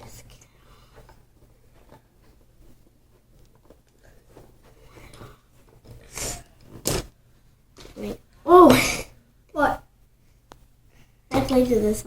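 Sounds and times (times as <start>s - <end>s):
small clicks and rustles of plastic: 0.1s - 6.9s.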